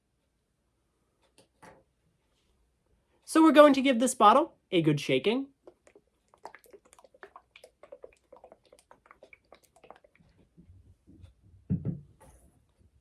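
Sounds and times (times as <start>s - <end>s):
liquid sloshing in bottle: 5.6s - 10.7s.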